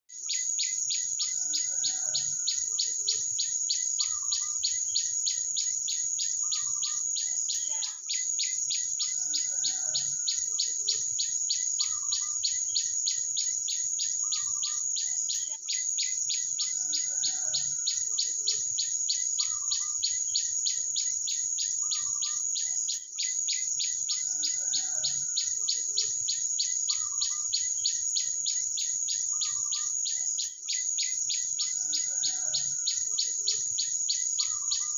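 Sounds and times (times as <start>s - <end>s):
small birds chirping: 0.1s - 34.9s
pulsing insect-like trill: 0.2s - 34.9s.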